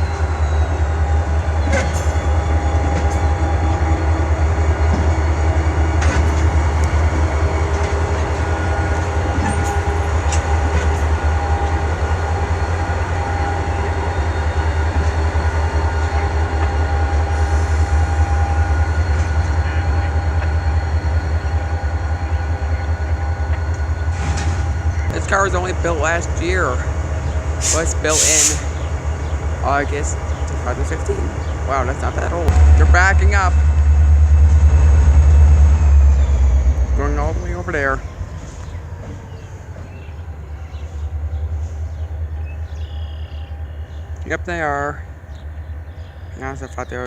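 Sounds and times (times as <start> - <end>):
train wheel squeal: 0.0 - 32.3, 34.5 - 44.2
freight train rumble: 0.0 - 47.0.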